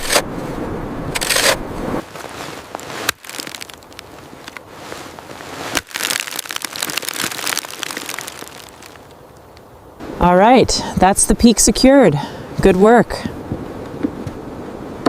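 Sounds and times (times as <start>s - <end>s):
shovel crunching and scraping snow: 0.0s - 0.4s, 1.2s - 8.9s.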